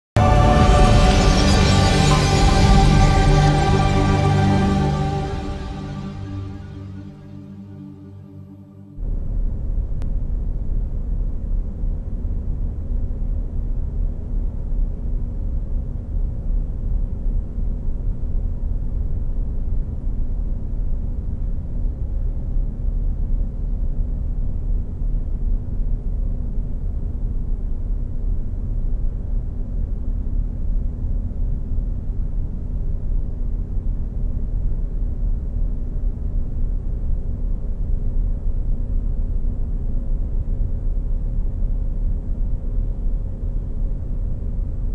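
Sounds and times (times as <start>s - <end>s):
deep rumble: 0.2s - 10.8s
faint low hum: 0.2s - 44.9s.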